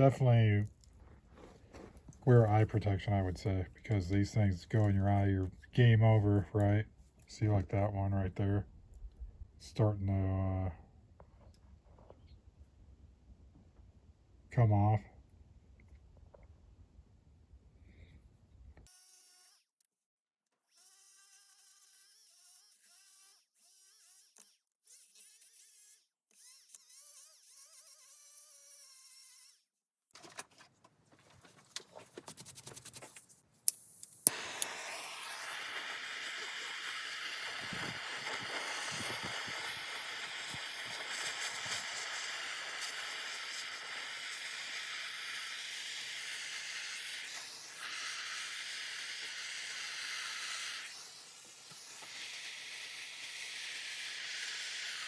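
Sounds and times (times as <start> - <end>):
gas torch igniter clicks: 33.7 - 43.6
torch flame hissing: 33.7 - 55.0.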